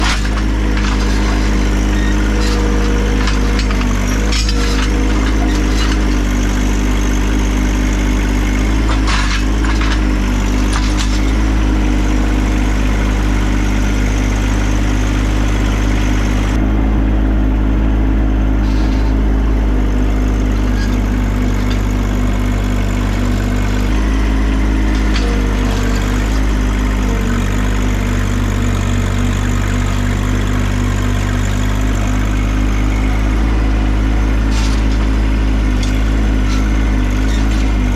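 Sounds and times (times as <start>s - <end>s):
tractor diesel engine running: 0.0s - 37.9s.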